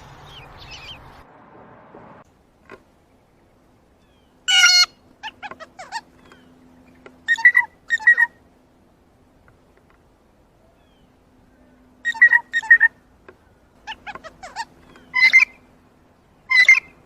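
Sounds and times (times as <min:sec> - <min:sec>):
blue jay calling: 0:00.2 - 0:01.2, 0:04.0 - 0:08.5, 0:10.7 - 0:17.0.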